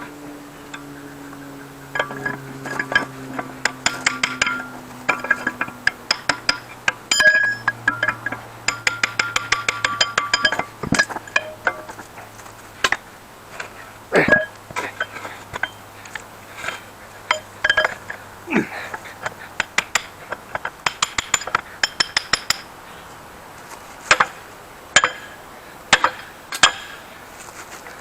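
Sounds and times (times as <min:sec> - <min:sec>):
metal parts clinking: 0:00.7 - 0:22.7.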